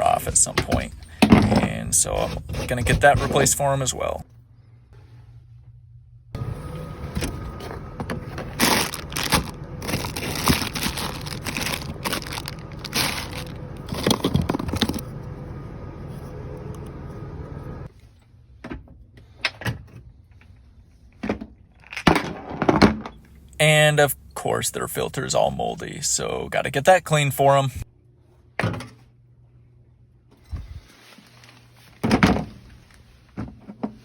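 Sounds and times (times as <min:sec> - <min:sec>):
steady hum: 0:00.0 - 0:17.9
hard parts clattering and knocking: 0:08.0 - 0:15.0.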